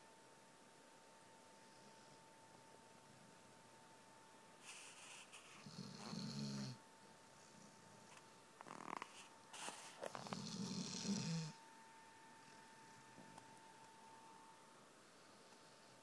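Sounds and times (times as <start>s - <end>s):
dog snoring: 4.6s - 6.8s, 8.6s - 11.6s.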